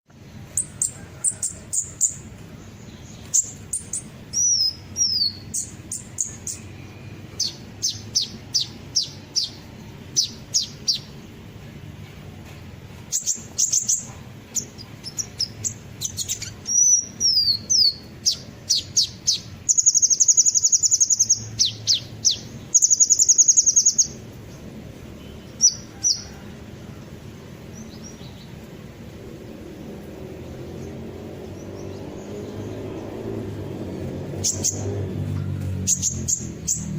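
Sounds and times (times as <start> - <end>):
bird chirping and whistling: 0.5 - 11.2, 13.1 - 24.2, 34.4 - 35.0, 35.8 - 36.9
buzzy bird trills: 13.0 - 24.3.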